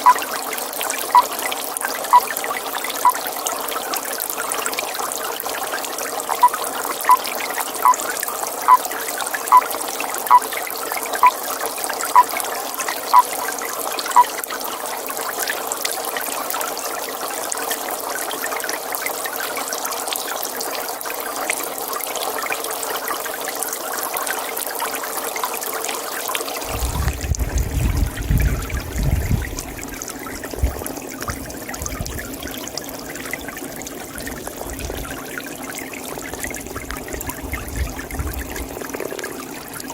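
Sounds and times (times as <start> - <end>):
toad calling: 0.0 - 0.4, 1.0 - 1.3, 2.1 - 2.4, 3.0 - 3.2, 6.4 - 8.0, 9.5 - 9.7, 10.3 - 10.5, 11.2 - 11.4, 12.1 - 12.3, 14.1 - 14.4
water trickling: 0.0 - 39.9.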